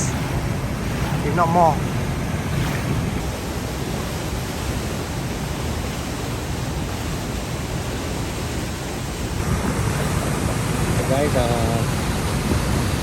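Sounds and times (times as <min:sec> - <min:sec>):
waterfall rushing water: 0:00.0 - 0:13.0.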